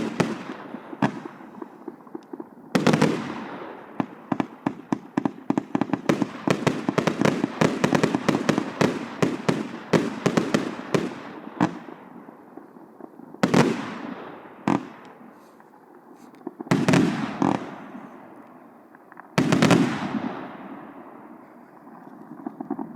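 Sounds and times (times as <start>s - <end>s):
fireworks firing sharp reports: 0.0s - 22.9s
loud firework bursts echoing: 0.0s - 22.9s.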